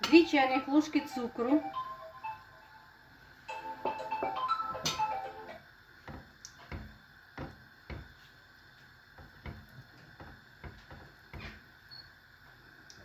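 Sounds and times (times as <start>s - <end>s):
utensil knocking against frying pan: 6.1s - 8.2s.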